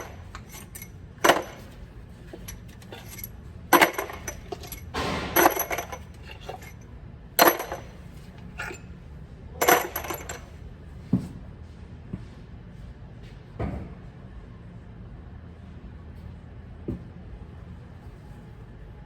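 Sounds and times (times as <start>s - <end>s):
metal objects clinking: 0.0s - 6.8s, 7.4s - 8.9s, 9.6s - 10.6s
metal rattle: 0.0s - 6.8s, 7.4s - 8.9s, 9.6s - 10.6s.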